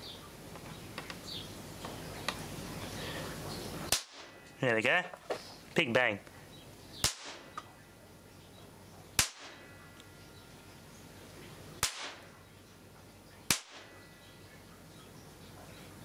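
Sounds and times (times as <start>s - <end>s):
capacitor discharge bangs: 3.9s - 4.4s, 7.0s - 7.6s, 9.1s - 9.8s, 11.8s - 12.3s, 13.5s - 14.0s.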